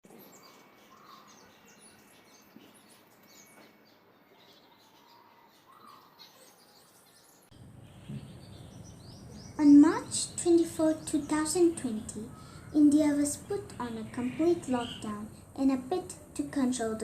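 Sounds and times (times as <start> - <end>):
faint bird chirping: 0.1 - 17.0
lower bird call: 7.6 - 10.1, 11.0 - 12.8.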